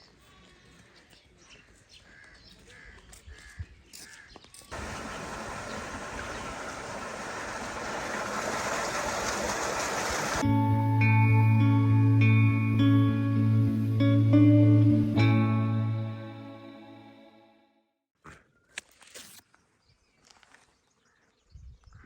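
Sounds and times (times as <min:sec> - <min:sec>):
crows cawing: 0:02.0 - 0:04.4.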